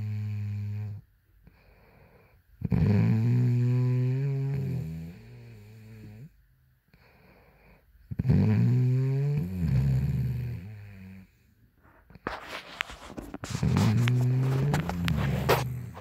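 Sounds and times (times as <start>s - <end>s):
woman snoring: 0.0s - 1.0s, 2.6s - 6.4s, 8.1s - 11.4s.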